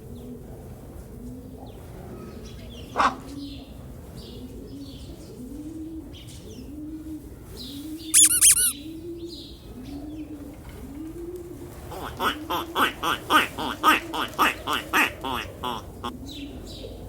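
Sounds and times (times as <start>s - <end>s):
low cooing bird calls: 1.1s - 17.0s
high peeping bird calls: 8.2s - 8.8s.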